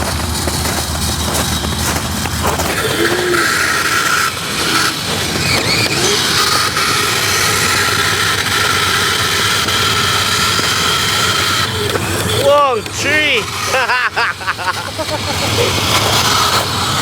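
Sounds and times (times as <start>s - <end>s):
electric motor high whine: 0.0s - 17.0s.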